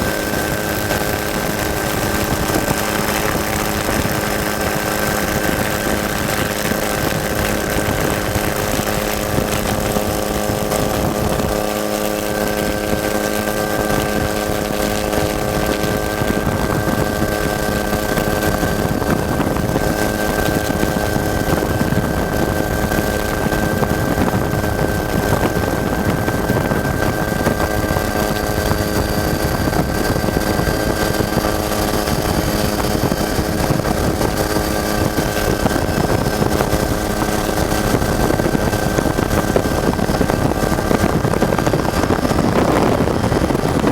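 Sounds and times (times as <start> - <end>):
rumble and rattle: 0.0 - 43.9
truck engine drone: 0.0 - 43.9.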